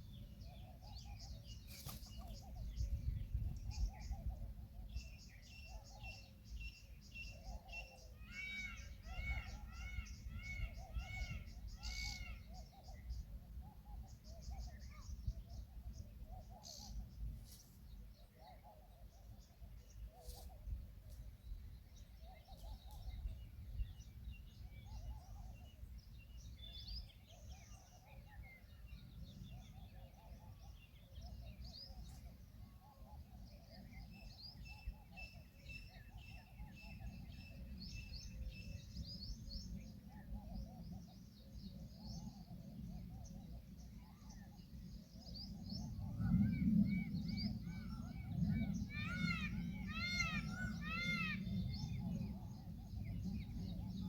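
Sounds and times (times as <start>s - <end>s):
small birds chirping: 0.0s - 54.0s
lower bird call: 4.8s - 13.1s.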